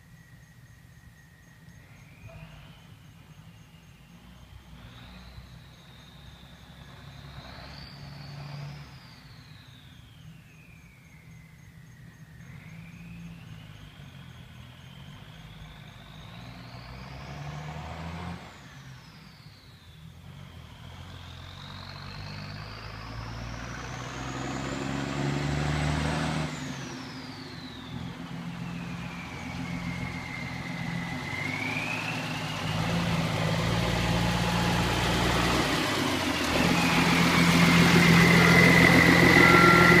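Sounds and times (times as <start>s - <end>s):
turbo whistling: 26.6s - 40.0s
truck engine running: 27.0s - 40.0s.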